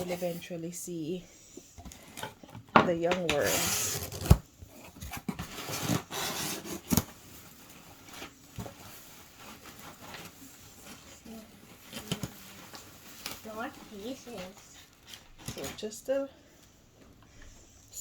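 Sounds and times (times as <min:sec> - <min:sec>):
hands rubbing and scraping soil: 0:00.0 - 0:00.6, 0:07.9 - 0:15.2.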